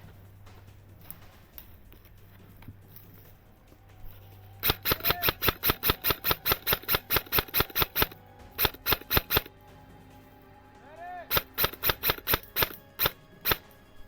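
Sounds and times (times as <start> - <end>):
airsoft rifle shots: 4.6 - 9.5, 11.3 - 13.8.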